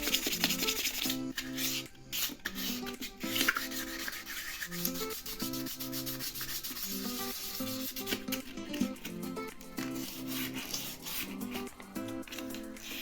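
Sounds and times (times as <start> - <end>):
background music: 0.0 - 13.0
sandpaper rubbing metal rim: 0.0 - 13.0.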